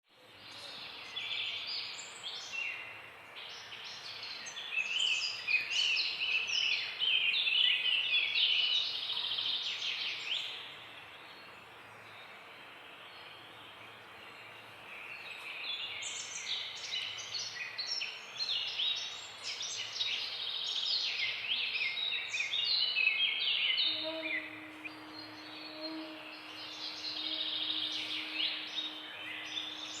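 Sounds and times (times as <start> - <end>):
birds chirping and twittering: 0.5 - 30.0
steady low hum: 23.9 - 30.0.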